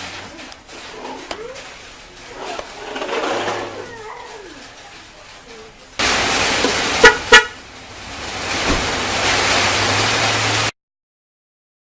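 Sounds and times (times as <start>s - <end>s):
loud steady rushing noise: 6.0s - 10.7s
car horn toots: 7.0s - 7.6s.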